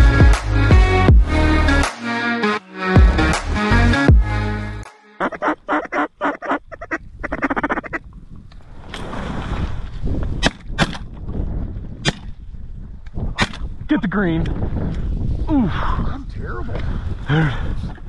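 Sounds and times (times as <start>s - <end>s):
duck quacking: 5.2s - 8.0s.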